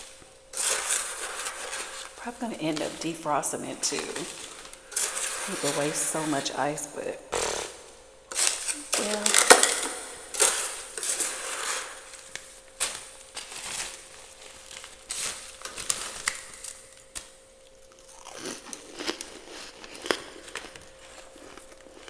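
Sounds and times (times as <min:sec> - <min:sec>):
freezer frost being scraped: 0:00.0 - 0:16.7.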